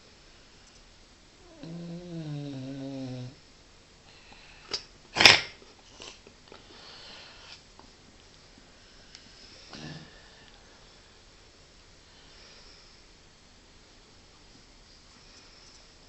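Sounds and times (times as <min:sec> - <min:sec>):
dog snoring: 0:01.4 - 0:03.4, 0:09.7 - 0:10.2.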